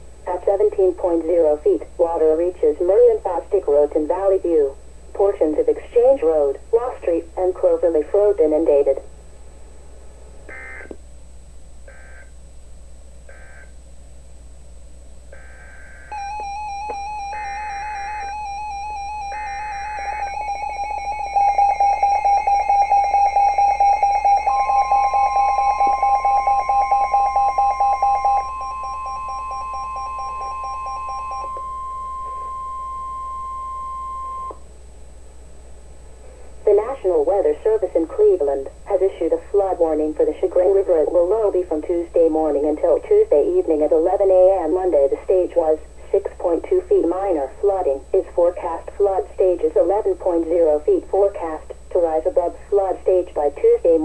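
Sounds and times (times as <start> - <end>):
data noise bursts: 10.5 - 11.0, 13.3 - 13.8, 15.3 - 34.6
steady warning alarm tone: 10.5 - 11.0, 11.8 - 12.4, 13.2 - 13.8, 15.3 - 34.6
trilling pulsing electronic alert: 11.9 - 12.3, 13.3 - 13.7, 15.3 - 34.6.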